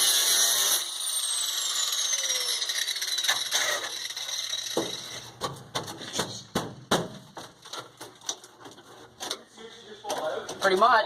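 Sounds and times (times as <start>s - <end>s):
power grinder spinning down: 0.0s - 5.2s
sharp knocks on metal: 4.8s - 7.6s.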